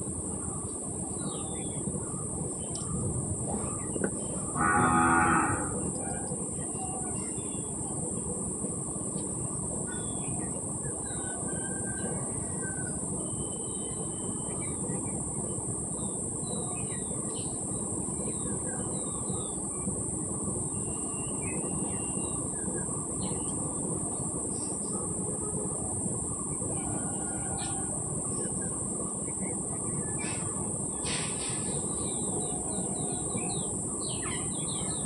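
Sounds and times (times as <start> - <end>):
high hiss: 30.1 - 34.2.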